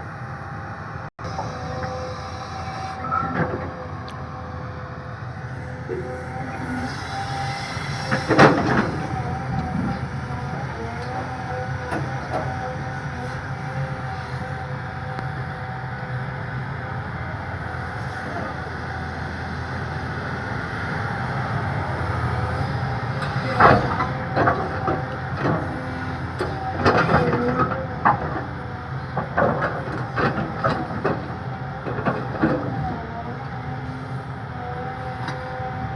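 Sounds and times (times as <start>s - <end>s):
diesel engine running: 0.0s - 35.9s
excavator clanks and knocks: 3.0s - 4.3s, 5.7s - 15.2s, 22.6s - 33.6s.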